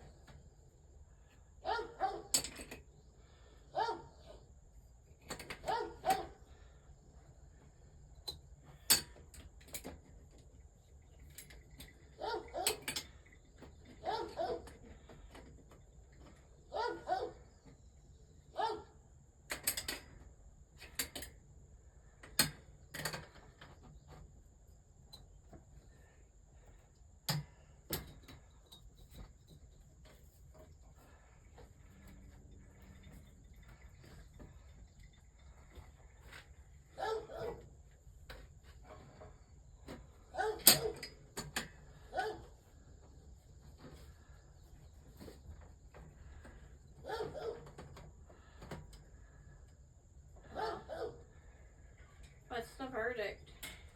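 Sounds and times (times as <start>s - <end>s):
dog barking: 1.6s - 2.3s, 3.7s - 4.4s, 5.6s - 6.4s, 12.2s - 12.9s, 14.0s - 14.7s, 16.7s - 17.4s, 18.6s - 18.9s, 37.0s - 37.6s, 40.4s - 41.0s, 42.1s - 42.5s, 47.0s - 47.7s, 50.5s - 51.2s.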